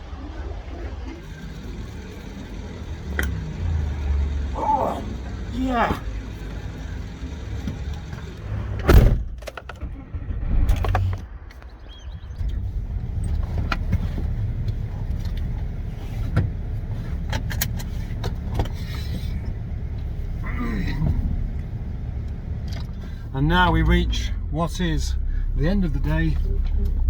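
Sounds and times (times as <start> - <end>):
steady low rumble: 18.2 - 27.0.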